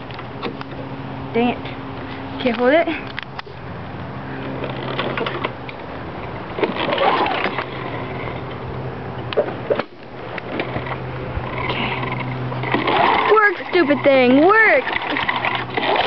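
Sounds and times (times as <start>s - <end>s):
lawn mower mechanical hum: 0.0s - 16.0s.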